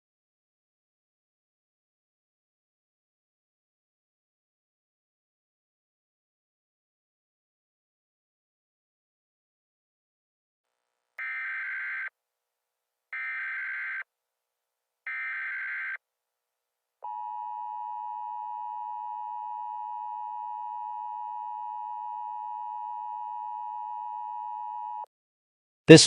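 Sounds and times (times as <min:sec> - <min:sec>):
steady attention tone: 0:17.0 - 0:25.1.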